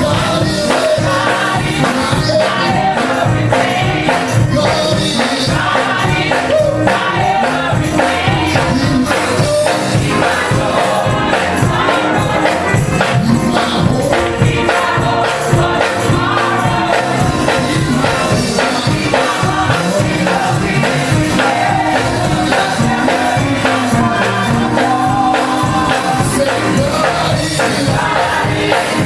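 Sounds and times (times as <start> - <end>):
band accompaniment: 0.0 - 29.0
choir singing gospel song: 0.0 - 29.0
drums: 0.0 - 29.0.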